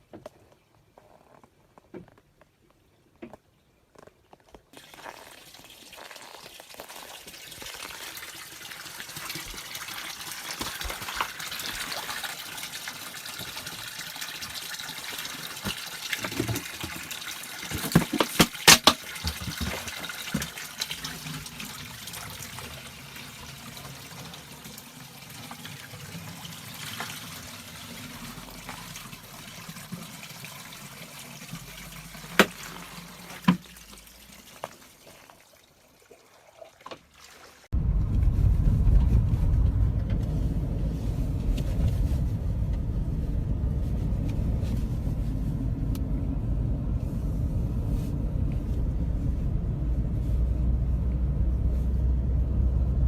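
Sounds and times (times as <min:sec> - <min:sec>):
spring water splashing: 0:04.8 - 0:37.8.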